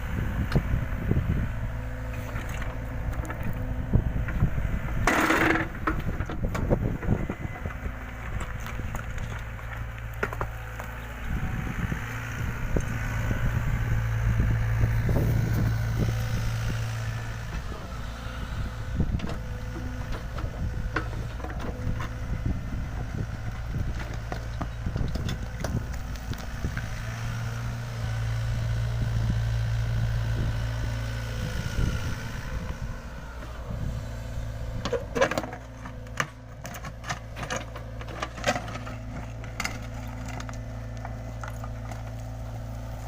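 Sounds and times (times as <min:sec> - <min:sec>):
excavator diesel engine running: 0:00.0 - 0:43.0
knocks of soil and stones: 0:02.0 - 0:13.2, 0:19.1 - 0:27.6, 0:34.7 - 0:43.0.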